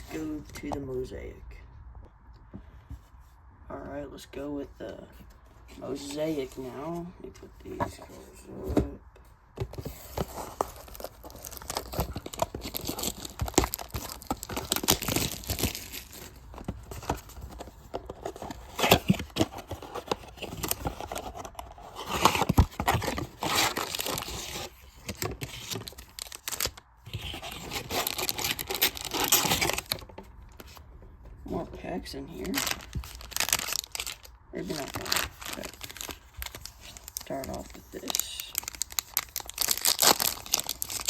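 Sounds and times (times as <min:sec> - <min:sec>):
plastic wrapping crinkling: 0:09.8 - 0:30.8, 0:32.2 - 0:41.0
packaging tearing: 0:10.0 - 0:30.1, 0:32.3 - 0:41.0.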